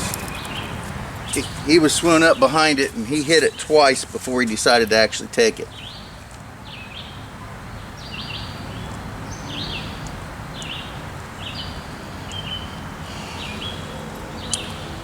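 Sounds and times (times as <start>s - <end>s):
bird calling: 0.0s - 4.8s, 9.3s - 15.0s
outdoor background hiss: 0.0s - 15.0s.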